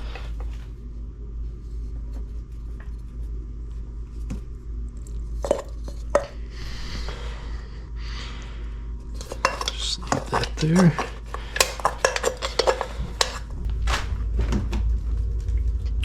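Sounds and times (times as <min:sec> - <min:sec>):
steady low hum: 0:00.0 - 0:16.0
metal tools clicking and knocking: 0:09.2 - 0:13.4.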